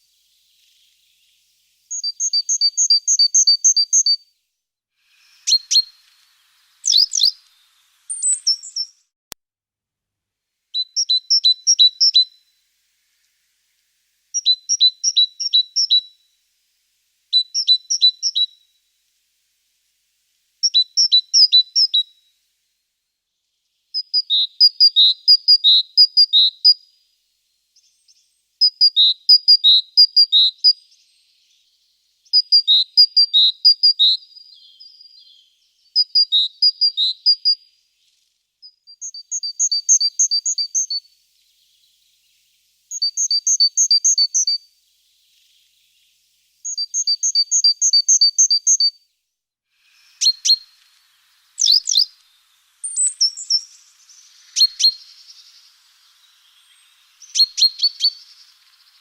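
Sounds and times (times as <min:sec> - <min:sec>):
small songbird singing: 0:00.0 - 0:09.1, 0:10.7 - 0:22.5, 0:23.2 - 0:59.0
sharp bird calls: 0:06.8 - 0:09.0, 0:49.9 - 0:59.0.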